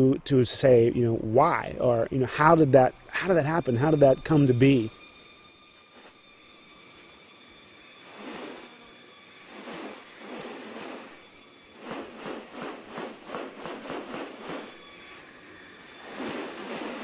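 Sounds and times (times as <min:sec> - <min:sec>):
high-pitched insect drone: 0:00.0 - 0:17.0
rhythmic rustling swishes: 0:09.5 - 0:11.2, 0:11.8 - 0:14.8, 0:16.0 - 0:17.0.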